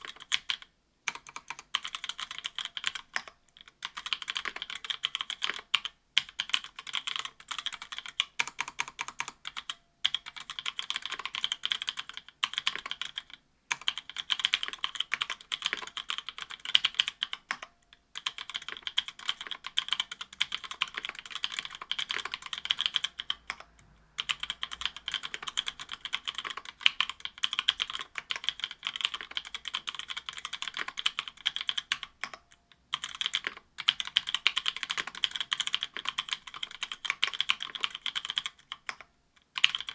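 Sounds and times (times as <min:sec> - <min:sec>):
fast typing on mechanical keyboard: 0:00.0 - 0:17.6, 0:18.2 - 0:39.9.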